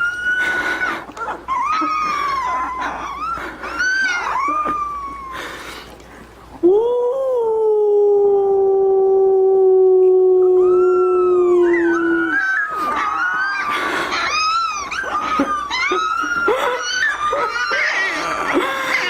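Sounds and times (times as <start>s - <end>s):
puppies howling and yipping: 0.0s - 5.9s, 10.4s - 19.0s.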